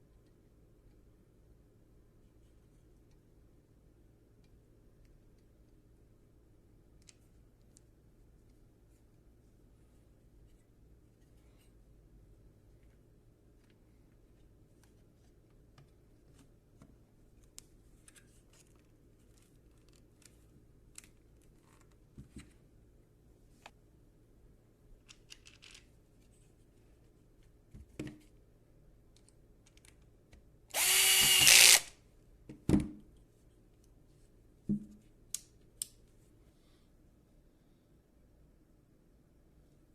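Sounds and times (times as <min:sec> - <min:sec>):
small power tool motor: 0:30.7 - 0:31.9.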